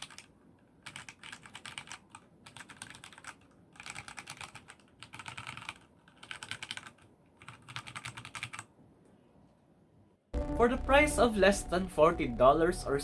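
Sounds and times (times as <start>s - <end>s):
mechanical keyboard keys clacking: 0.0s - 8.7s.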